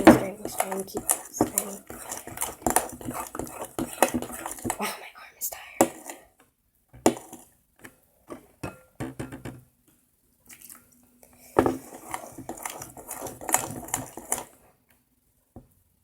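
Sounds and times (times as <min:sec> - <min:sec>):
spoon scraping mixing bowl: 0:00.0 - 0:04.8, 0:05.8 - 0:06.3, 0:07.0 - 0:07.5, 0:11.4 - 0:14.6.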